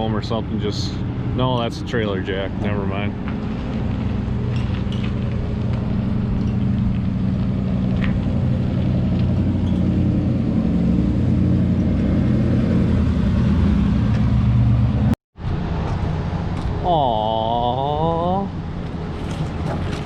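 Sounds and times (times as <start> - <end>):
truck engine under load: 0.0 - 17.3, 18.6 - 20.0.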